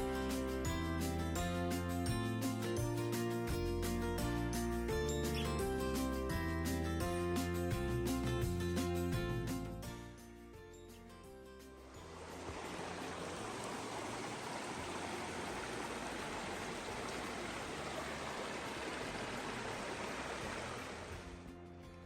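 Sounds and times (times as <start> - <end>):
stream water rushing: 11.8 - 21.6.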